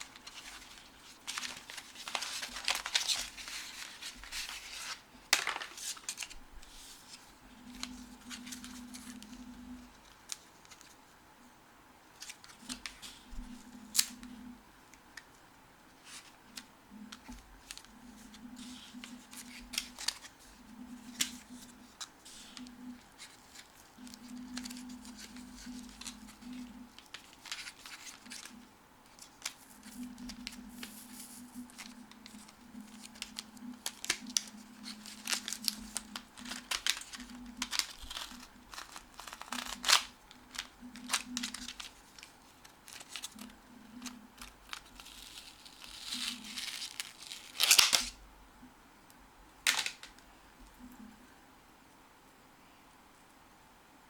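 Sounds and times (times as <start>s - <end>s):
packaging being opened: 0.0s - 6.3s, 16.1s - 48.2s, 49.7s - 50.1s
paper rustling: 0.0s - 11.0s, 12.2s - 14.5s, 16.0s - 48.2s, 49.7s - 50.2s
low hum: 12.7s - 45.1s.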